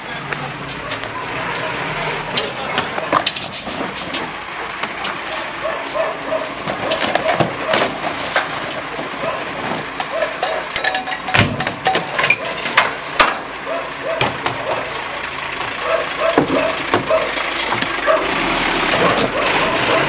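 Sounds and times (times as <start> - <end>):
garbage truck rumbling: 0.0 - 20.0
clatters and knocks: 10.0 - 13.4.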